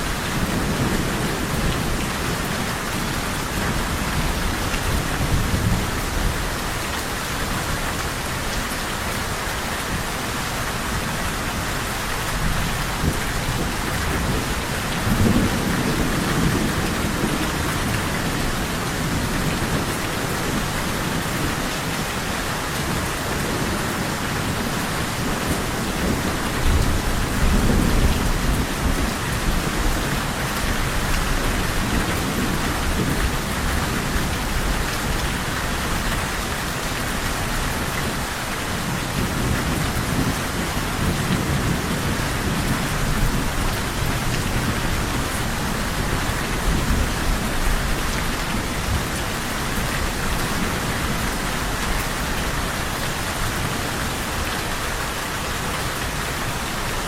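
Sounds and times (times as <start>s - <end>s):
heavy rain falling: 0.0s - 57.0s
low rolls of thunder: 0.1s - 6.7s.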